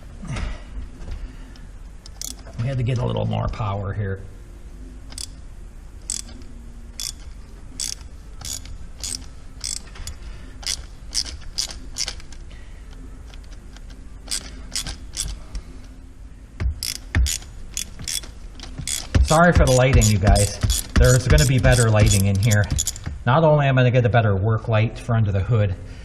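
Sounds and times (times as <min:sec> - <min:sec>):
hand ratchet clicking: 0:02.0 - 0:02.5, 0:05.1 - 0:05.4, 0:06.0 - 0:12.4, 0:13.3 - 0:15.5, 0:16.8 - 0:23.2.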